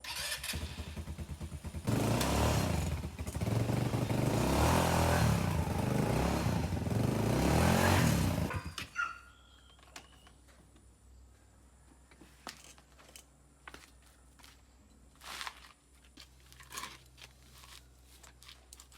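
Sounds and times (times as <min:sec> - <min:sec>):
atv engine revving: 0:00.0 - 0:08.8.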